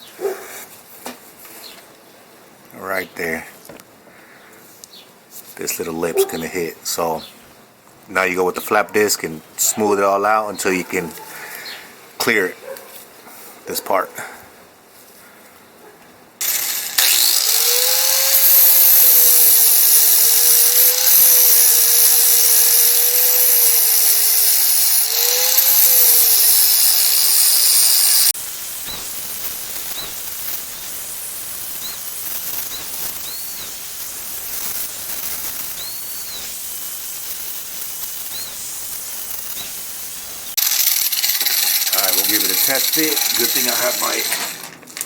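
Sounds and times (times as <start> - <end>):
angle grinder grinding metal: 16.4 - 45.0
faint high chirps: 31.8 - 33.8, 35.7 - 36.6, 38.2 - 38.6.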